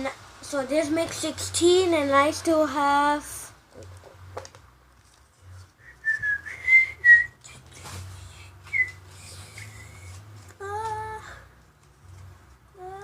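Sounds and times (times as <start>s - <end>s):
handling rustle and clicks: 3.8s - 5.8s
person whistling: 5.8s - 7.4s, 8.7s - 10.1s.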